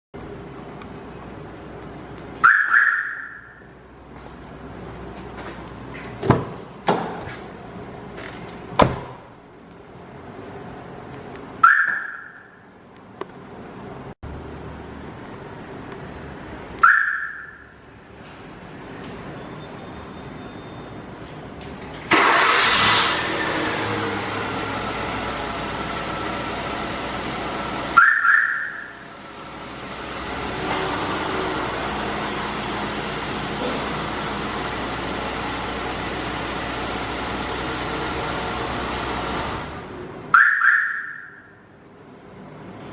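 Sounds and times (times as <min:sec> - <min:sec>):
car engine starting and running: 0:00.2 - 0:42.9
car alarm siren chirp: 0:02.4 - 0:03.8, 0:11.6 - 0:12.7, 0:16.8 - 0:17.8, 0:28.0 - 0:29.0, 0:40.3 - 0:41.6.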